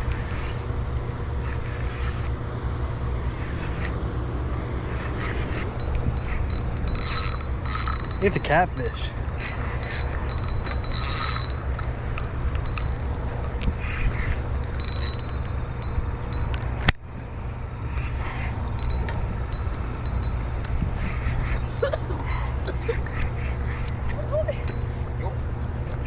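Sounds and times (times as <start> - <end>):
steady low rumble: 0.0 - 26.0
fishing reel clicking: 5.8 - 16.6, 18.8 - 20.4.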